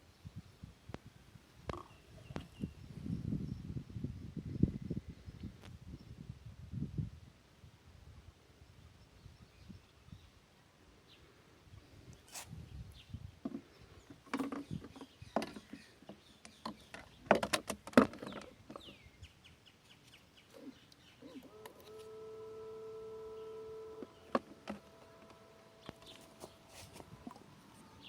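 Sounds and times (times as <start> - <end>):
sharp clicks and knocks: 13.5 - 19.0
water pump humming: 21.4 - 28.0.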